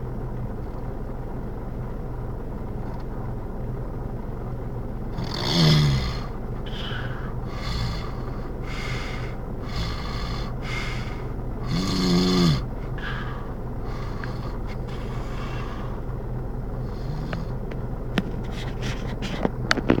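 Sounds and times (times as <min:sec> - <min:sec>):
noisy breathing: 0:05.1 - 0:19.5
person snoring: 0:05.2 - 0:16.0, 0:16.8 - 0:17.6.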